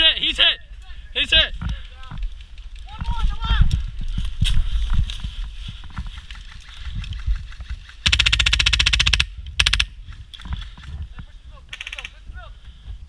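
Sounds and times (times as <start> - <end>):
airsoft gun firing bursts: 7.8 - 9.9.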